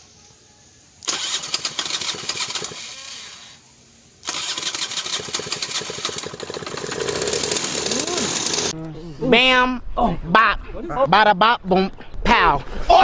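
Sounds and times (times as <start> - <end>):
scooter electric starter cranking: 1.0 - 3.5, 4.2 - 8.8
scooter engine running: 1.1 - 3.2, 4.2 - 8.8.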